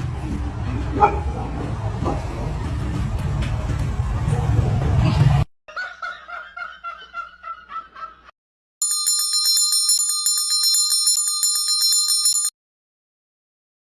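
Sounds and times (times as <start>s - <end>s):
bell-like jingling with clicks: 8.8s - 12.5s.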